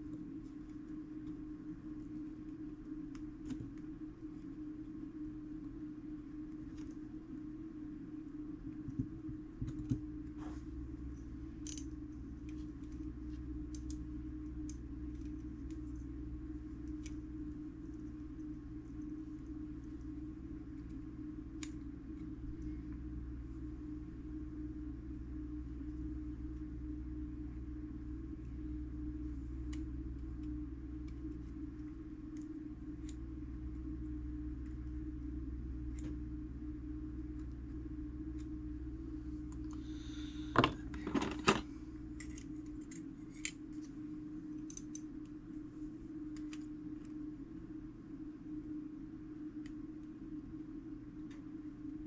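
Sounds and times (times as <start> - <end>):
steady low hum: 0.0 - 52.0
tweezers clicking on metal parts: 11.6 - 13.1, 13.7 - 14.0, 44.5 - 45.3.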